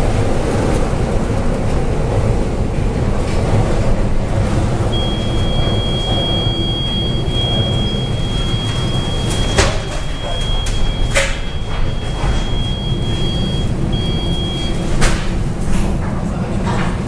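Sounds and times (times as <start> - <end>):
sea noise: 0.0 - 15.6
ship low rumble: 0.0 - 17.0
steady high-pitched tone: 4.9 - 15.0.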